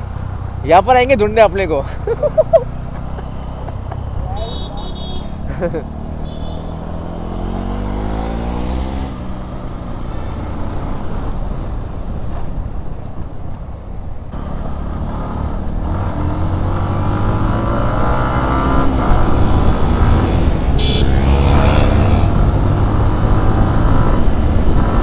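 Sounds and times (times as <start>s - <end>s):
motorcycle engine accelerating: 0.0s - 12.6s, 14.3s - 25.0s
wind noise: 15.5s - 25.0s.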